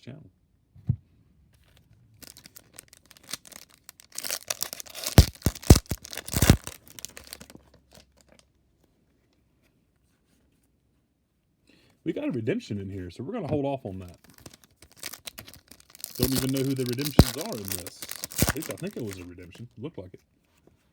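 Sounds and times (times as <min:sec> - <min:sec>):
plastic wrapper crinkling and tearing: 0:02.2 - 0:08.4, 0:14.2 - 0:19.6.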